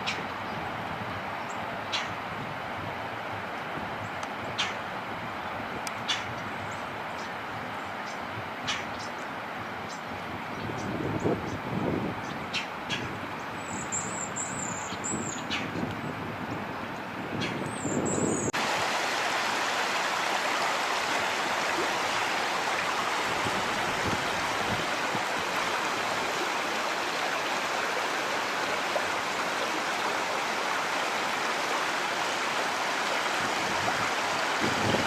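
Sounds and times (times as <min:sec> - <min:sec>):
floodwater rushing: 0:18.5 - 0:35.0.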